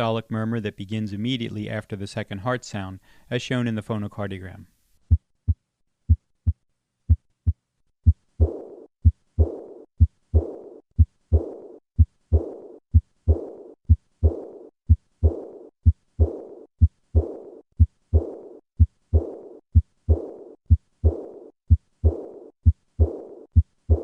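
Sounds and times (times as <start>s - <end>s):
heartbeat thumps: 5.1s - 24.0s
high-pitched heart murmur: 5.5s - 24.0s.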